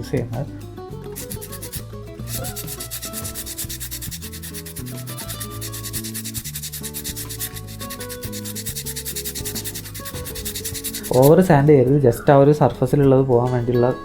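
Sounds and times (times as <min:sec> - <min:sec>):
sandpaper rubbing back and forth: 0:01.2 - 0:11.5.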